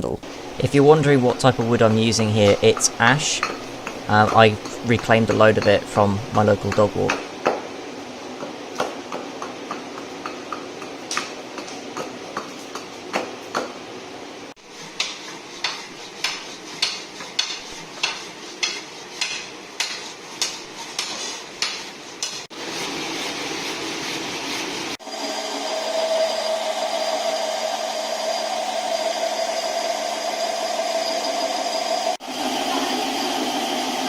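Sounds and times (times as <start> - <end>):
hand tools shaping wood: 1.0 - 7.6, 14.6 - 25.0
sharp tool strokes on wood: 14.6 - 33.2.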